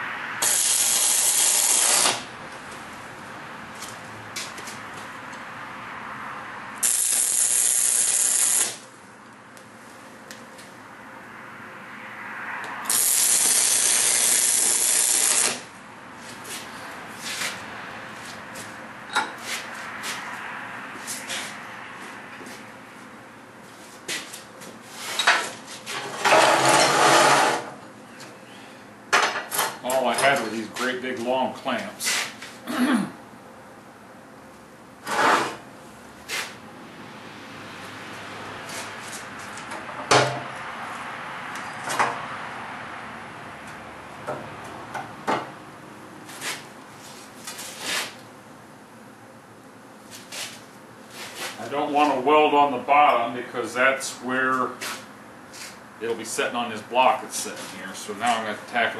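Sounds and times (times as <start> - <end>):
welding arc buzzing: 0.4 - 2.3, 6.8 - 8.9, 12.8 - 15.8.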